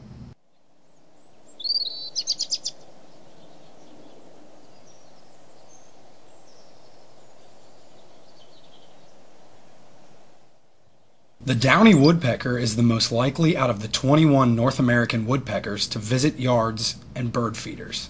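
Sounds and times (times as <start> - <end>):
outdoor hiss: 0.0 - 18.0
distant bird chirps: 0.4 - 15.3
chickadee calling: 0.9 - 9.8, 11.1 - 16.7.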